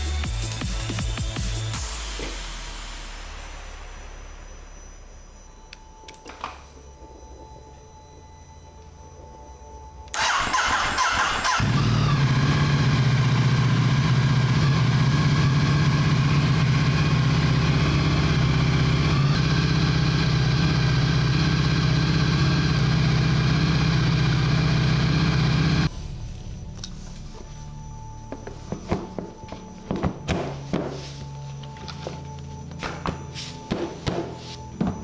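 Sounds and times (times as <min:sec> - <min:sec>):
motorcycle starter cranking: 0:10.1 - 0:12.6
motorcycle engine idling: 0:10.2 - 0:25.9.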